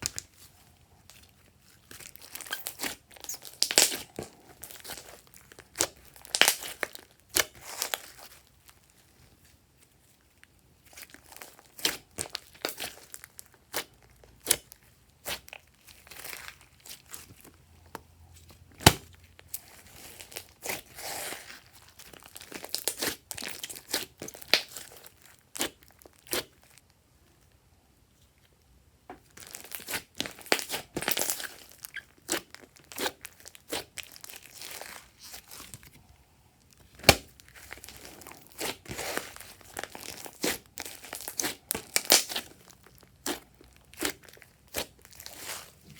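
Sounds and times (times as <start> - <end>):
slime popping and crackling: 1.9 - 8.4, 18.8 - 26.6, 29.4 - 35.9, 36.7 - 45.9.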